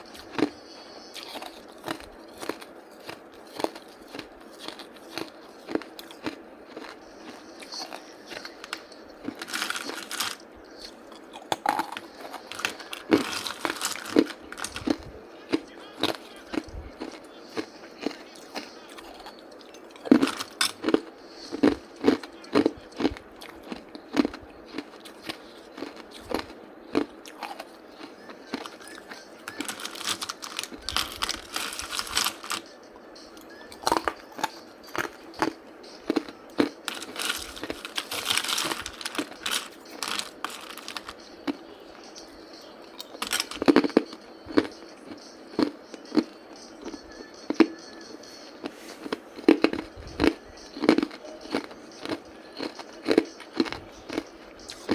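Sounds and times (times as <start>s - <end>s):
gritty grinding of chewed ice: 0.0s - 41.6s, 43.0s - 44.8s, 48.6s - 54.9s
ice crunching: 1.2s - 10.9s, 11.5s - 15.0s, 20.0s - 21.0s, 24.8s - 32.7s, 33.4s - 41.6s, 43.0s - 44.7s.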